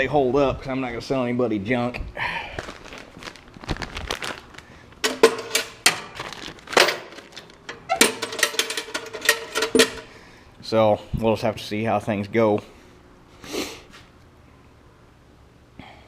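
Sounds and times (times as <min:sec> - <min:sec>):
objects clicking and knocking: 0:05.0 - 0:10.1.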